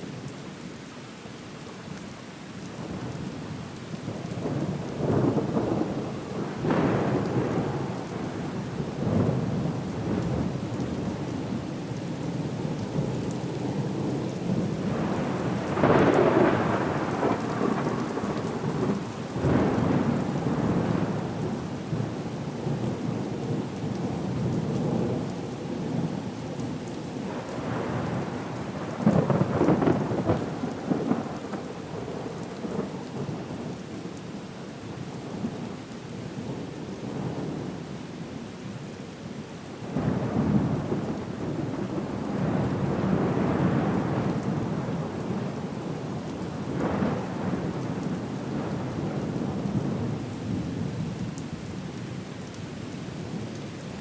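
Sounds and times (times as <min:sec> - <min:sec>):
heavy rain: 0:00.0 - 0:54.0
rolling thunder: 0:13.8 - 0:22.8, 0:27.4 - 0:32.9.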